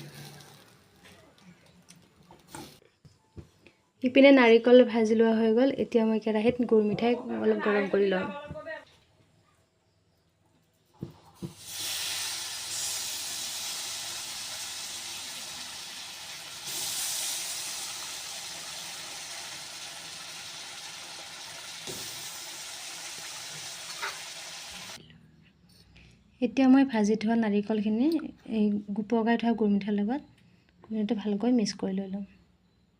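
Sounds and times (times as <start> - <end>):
sugar sizzling in a wok: 0.0 - 1.0, 11.3 - 25.0.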